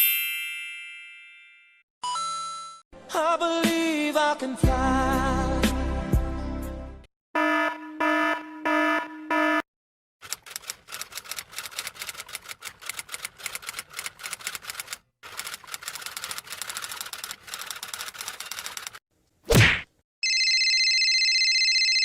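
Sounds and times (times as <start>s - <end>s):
keyboard typing clatter: 10.2s - 19.0s.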